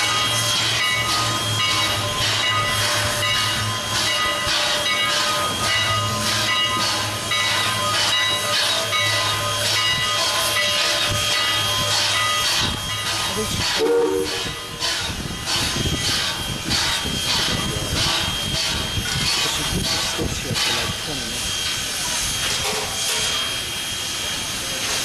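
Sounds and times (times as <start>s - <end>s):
steam locomotive chuffing: 0.0s - 25.0s.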